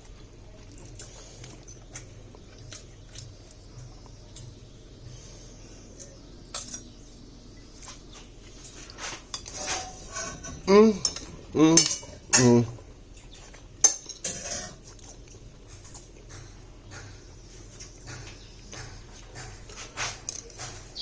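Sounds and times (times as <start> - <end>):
cutlery clinking on a plate: 6.5 - 6.9, 9.0 - 12.6, 13.8 - 15.2.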